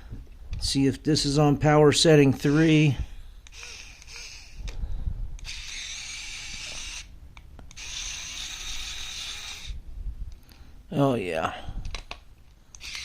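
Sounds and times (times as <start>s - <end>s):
electric screwdriver whirring: 3.5s - 4.8s, 5.4s - 7.1s, 7.7s - 9.8s, 12.7s - 13.0s
screwdriver clicks: 11.9s - 13.0s.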